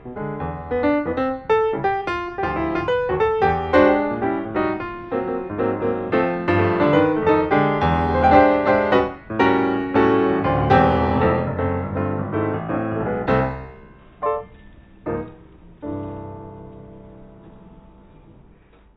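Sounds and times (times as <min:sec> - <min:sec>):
piano music: 0:00.0 - 0:18.6.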